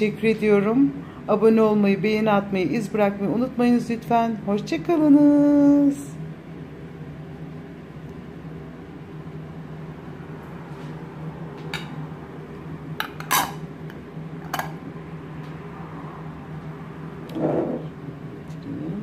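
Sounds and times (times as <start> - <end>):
steady low hum: 0.0 - 19.0
dishes clinking: 13.0 - 13.6.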